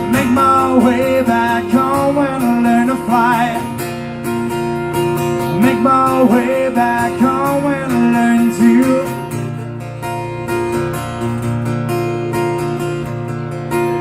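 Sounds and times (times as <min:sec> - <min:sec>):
man singing: 0:00.0 - 0:03.8, 0:05.5 - 0:09.3
acoustic guitar strumming: 0:00.0 - 0:14.0.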